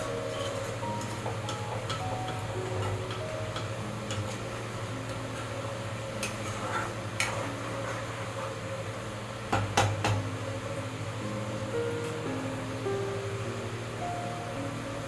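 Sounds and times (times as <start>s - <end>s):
utensils clinking on dishes: 0.0s - 4.4s
soft background music: 0.0s - 15.0s.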